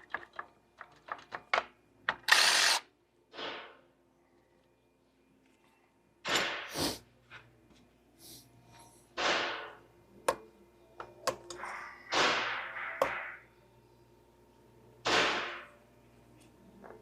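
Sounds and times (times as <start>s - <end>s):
short bursts of hissing: 6.7s - 7.0s.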